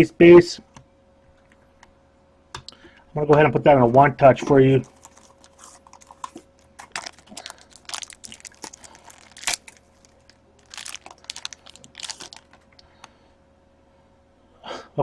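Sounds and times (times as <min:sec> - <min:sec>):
plastic sleeve crinkling: 0:04.7 - 0:12.8.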